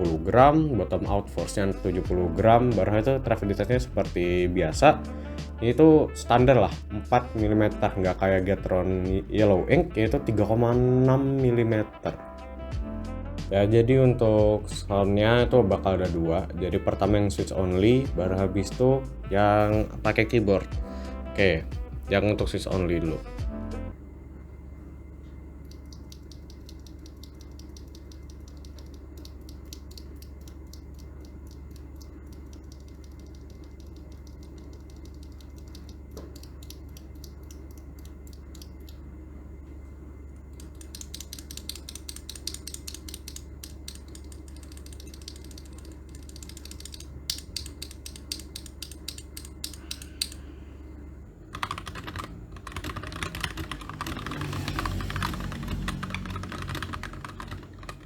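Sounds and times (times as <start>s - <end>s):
mechanical keyboard typing: 25.7s - 38.9s, 40.6s - 50.4s, 51.5s - 58.0s
keyboard switch clicking: 40.6s - 50.4s.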